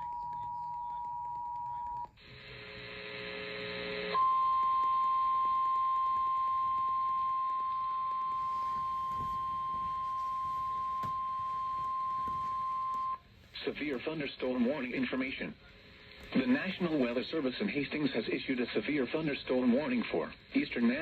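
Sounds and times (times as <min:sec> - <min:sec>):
radio static hiss: 0:02.2 - 0:04.2, 0:08.2 - 0:21.0
high-pitched alarm tone: 0:04.2 - 0:13.2.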